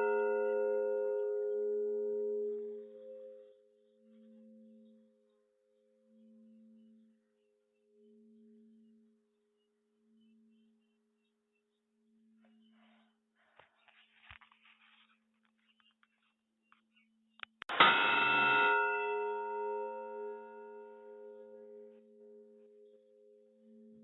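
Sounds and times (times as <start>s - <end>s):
bell hum lingering: 0.0s - 3.6s, 17.8s - 22.0s.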